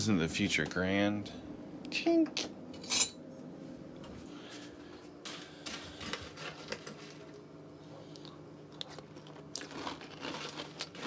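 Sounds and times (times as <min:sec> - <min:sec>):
person chewing crunchy cereal: 0:07.9 - 0:11.0.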